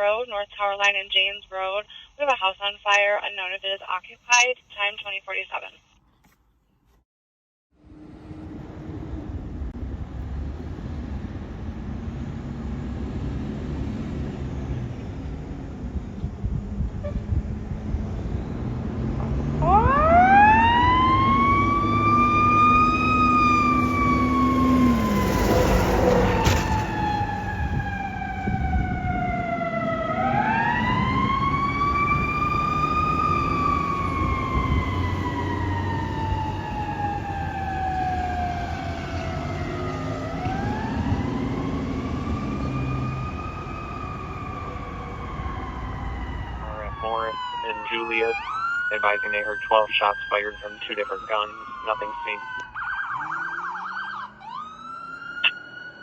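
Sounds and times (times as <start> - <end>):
truck engine rumble: 7.8 - 55.9
fire truck siren wailing: 17.0 - 56.0.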